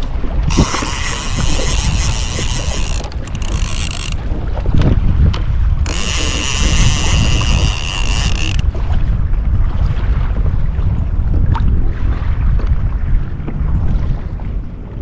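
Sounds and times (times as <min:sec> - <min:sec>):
wind rumble on microphone: 0:00.0 - 0:15.0
fishing reel ratcheting: 0:00.5 - 0:04.8, 0:05.8 - 0:08.7.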